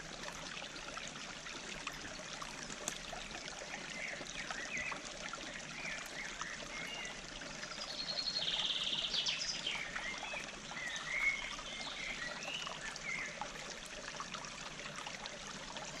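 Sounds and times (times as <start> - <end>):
stream flowing over rocks: 0.0 - 16.0
small birds chirping: 3.8 - 13.4.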